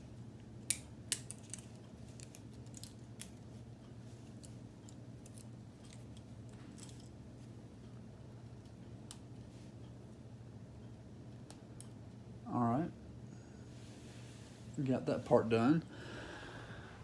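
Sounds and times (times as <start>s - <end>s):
steady low hum: 0.0s - 17.0s
plastic pieces snapping and clicking: 0.6s - 3.4s.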